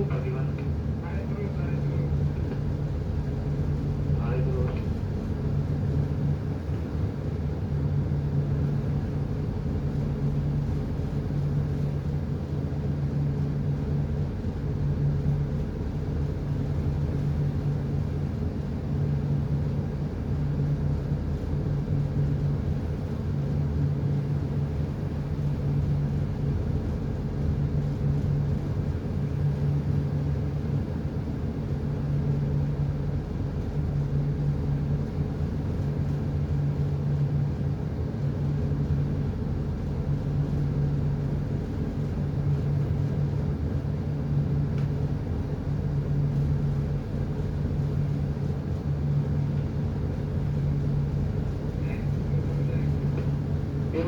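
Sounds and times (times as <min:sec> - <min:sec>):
ship diesel engine hum: 0:00.0 - 0:23.4, 0:45.1 - 0:54.0.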